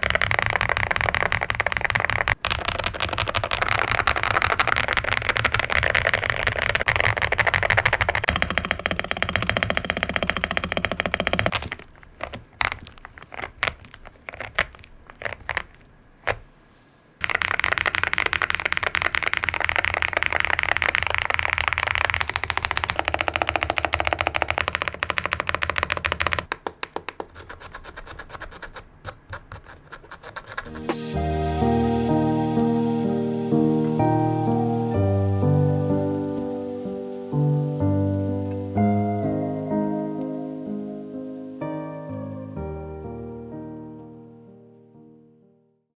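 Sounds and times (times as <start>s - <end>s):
mechanical keyboard typing: 0.0s - 16.5s, 17.2s - 31.0s.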